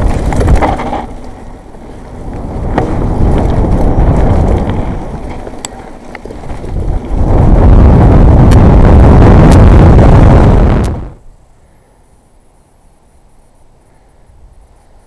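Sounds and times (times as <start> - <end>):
bike clicks and knocks: 0.0 - 7.2
wind buffeting microphone: 0.0 - 11.2
mountain bike rolling rumble: 0.0 - 11.9.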